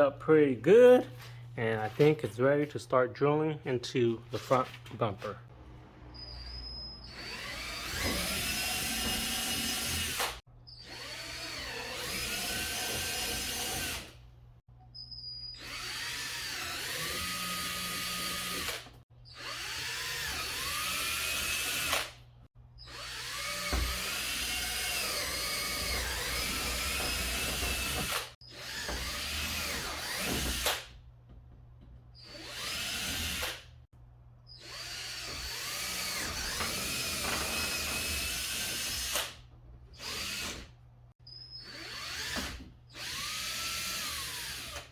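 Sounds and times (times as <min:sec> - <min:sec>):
power drill boring into plastic: 0:07.0 - 0:14.2, 0:15.6 - 0:22.2, 0:22.8 - 0:30.9, 0:32.2 - 0:33.6, 0:34.5 - 0:39.4, 0:41.5 - 0:44.9.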